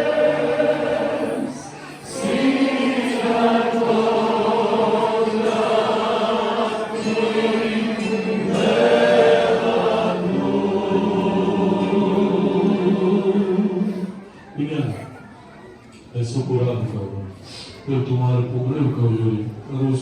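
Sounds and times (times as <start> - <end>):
group singing long notes: 0.0 - 14.3.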